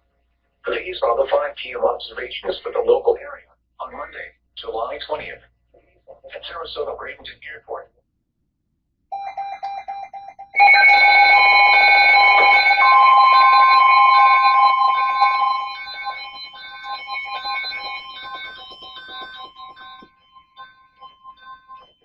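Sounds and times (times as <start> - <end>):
pulsing electronic alarm beep: 9.1 - 22.0
steady warning alarm tone: 9.1 - 22.0.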